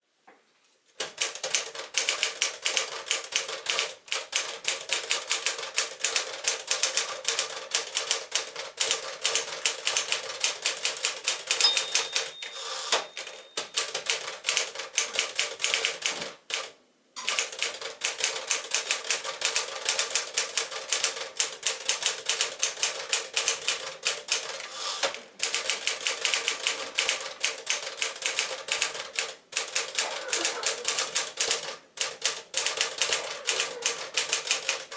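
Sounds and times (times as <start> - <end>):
typewriter keystrokes clattering: 1.0 - 24.6, 25.4 - 34.9
typewriter margin bell ring: 11.5 - 14.0.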